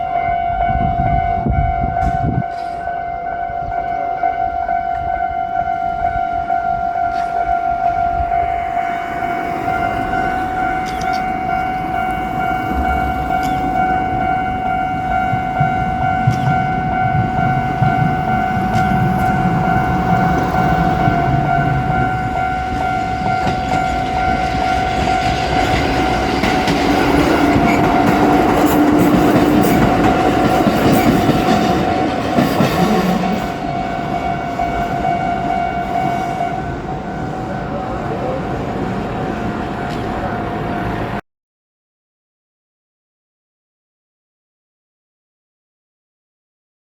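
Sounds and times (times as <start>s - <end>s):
electric train passing: 0.0s - 41.2s
level crossing alarm ringing: 0.0s - 41.2s
wheels clattering over rail joints: 15.2s - 34.3s.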